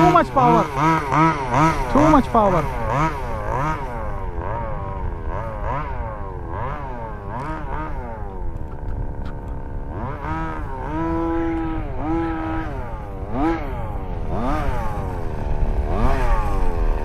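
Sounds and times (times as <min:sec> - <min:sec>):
small two-stroke engine revving: 0:00.0 - 0:17.0.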